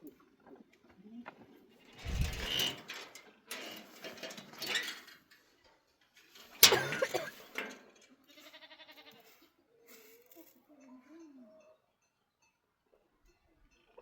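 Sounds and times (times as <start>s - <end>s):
scraping rustling noise: 2.0s - 3.1s
sheep bleating: 8.3s - 9.4s.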